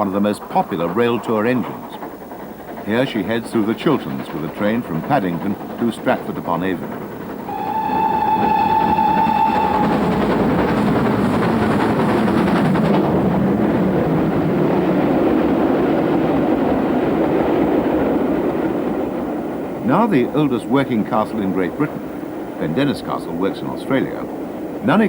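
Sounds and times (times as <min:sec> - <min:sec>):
train rumbling: 0:00.0 - 0:25.0
steam locomotive whistle: 0:07.5 - 0:12.5.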